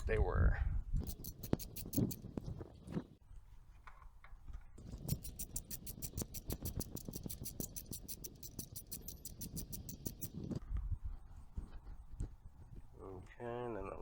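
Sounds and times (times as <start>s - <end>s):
ratchet wrench clicking: 1.0s - 2.6s, 4.8s - 10.6s.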